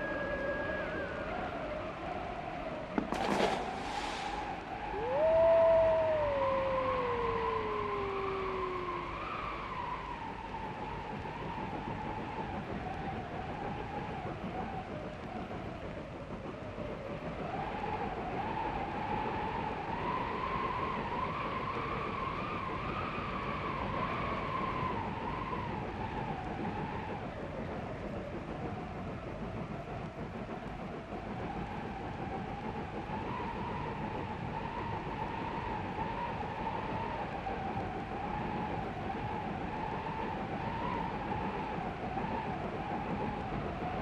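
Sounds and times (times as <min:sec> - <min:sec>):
wavering whistling tone: 0:00.0 - 0:11.4
train rumbling: 0:00.0 - 0:23.8.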